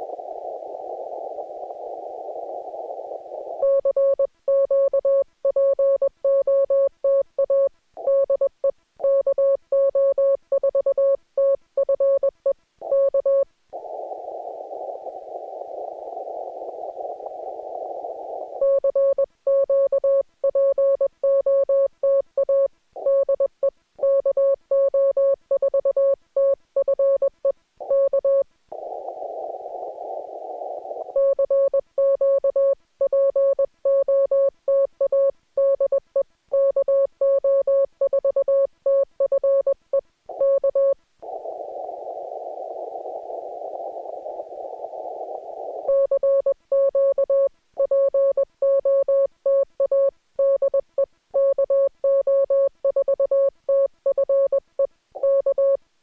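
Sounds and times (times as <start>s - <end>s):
radio receiver hiss: 0.0s - 3.7s, 13.7s - 18.7s, 27.8s - 31.3s, 40.3s - 46.1s.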